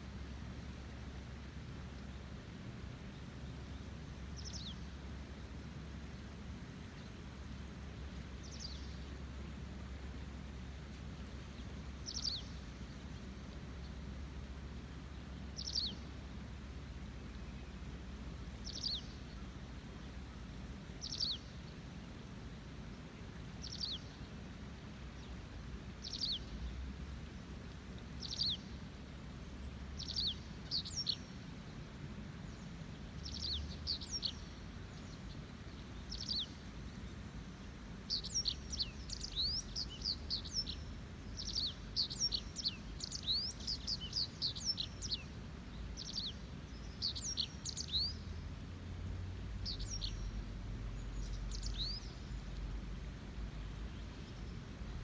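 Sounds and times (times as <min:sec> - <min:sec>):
small songbird calling: 0:04.4 - 0:04.9, 0:11.7 - 0:14.0, 0:15.1 - 0:16.2, 0:18.6 - 0:20.4, 0:21.0 - 0:21.6, 0:22.6 - 0:24.2, 0:26.0 - 0:26.8, 0:28.2 - 0:28.8, 0:29.4 - 0:31.5, 0:32.4 - 0:48.6, 0:49.6 - 0:53.0.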